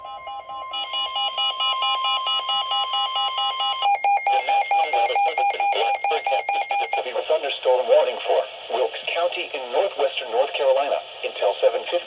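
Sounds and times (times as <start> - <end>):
steady warning tone: 0.0 - 7.0
two-pitch warbling alarm beeps: 0.0 - 7.0.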